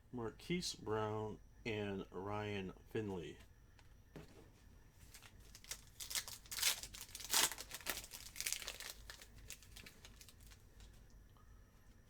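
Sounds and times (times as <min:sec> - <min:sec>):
wrapper tearing and crinkling: 0:05.0 - 0:10.7.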